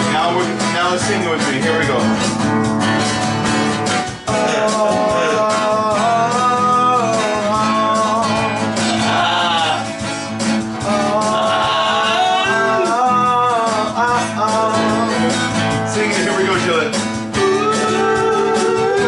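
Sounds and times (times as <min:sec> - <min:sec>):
instrumental accompaniment: 0:00.0 - 0:19.0
person singing: 0:04.1 - 0:10.0, 0:10.8 - 0:15.7, 0:17.3 - 0:19.0.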